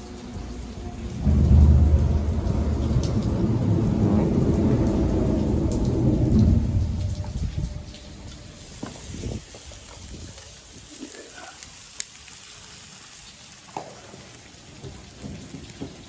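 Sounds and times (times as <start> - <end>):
steady rain: 0.0 - 16.0
thunder rumbling: 0.1 - 9.4.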